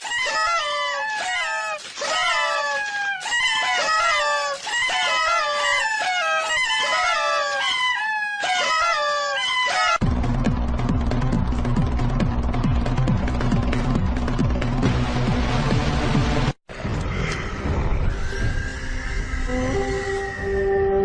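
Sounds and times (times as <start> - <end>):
chickens squawking: 0.0 - 10.0.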